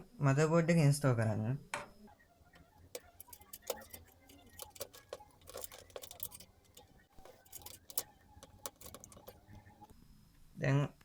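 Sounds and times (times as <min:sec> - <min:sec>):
clicks taps and scrapes of handling: 0:02.5 - 0:10.0.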